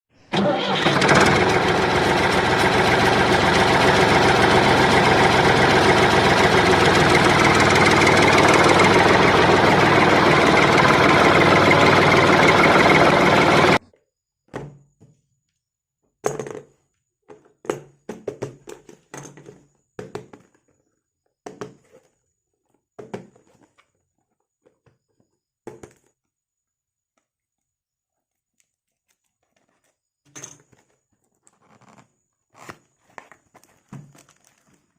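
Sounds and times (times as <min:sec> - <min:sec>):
loud steady mechanical noise: 0:00.3 - 0:13.8
toy packaging rustling: 0:32.6 - 0:34.9.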